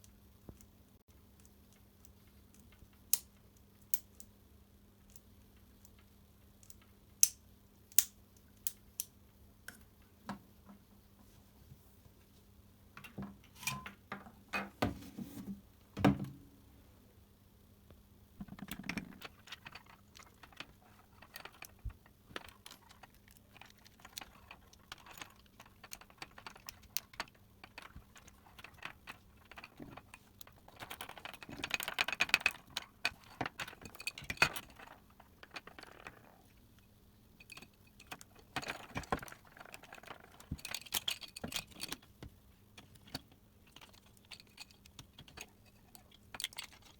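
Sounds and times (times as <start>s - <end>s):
plastic parts and tools clicking: 18.4s - 46.9s.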